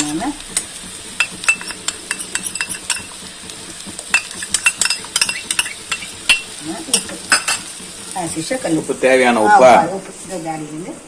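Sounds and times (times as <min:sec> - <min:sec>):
faint hiss of cooking pot: 0:00.0 - 0:11.0
metal spoon clinking in a pot: 0:01.2 - 0:03.2, 0:04.1 - 0:07.7.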